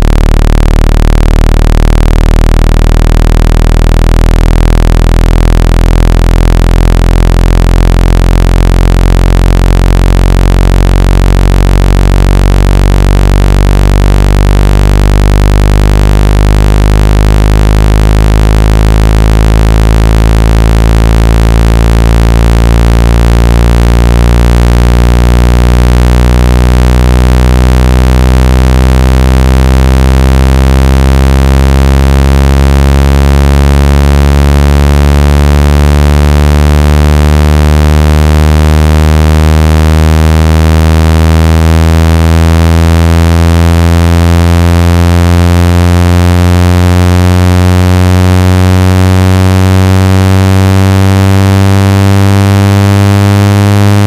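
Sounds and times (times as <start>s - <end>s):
low buzzing electronic tone: 0.0s - 54.0s.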